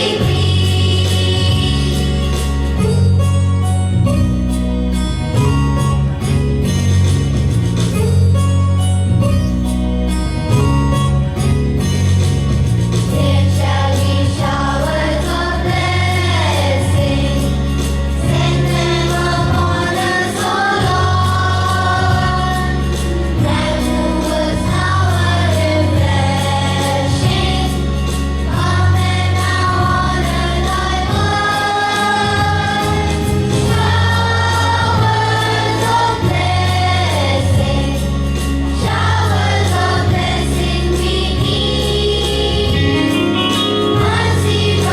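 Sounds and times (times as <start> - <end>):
group singing: 0.0 - 2.7, 13.1 - 44.9
instrumental backing with bass line: 0.0 - 44.9.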